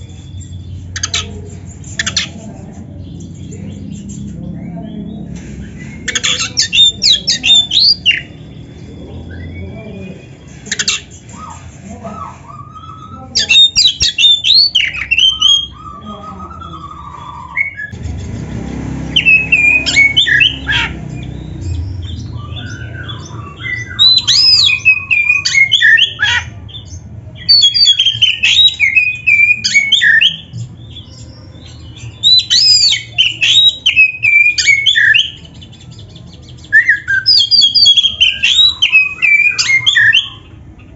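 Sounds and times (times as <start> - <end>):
bird singing whistles and squawks: 3.9 - 18.0, 19.1 - 40.9.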